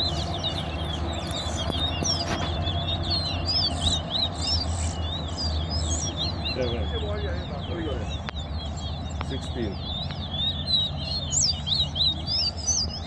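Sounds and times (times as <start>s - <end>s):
finches chirping: 0.0s - 13.0s.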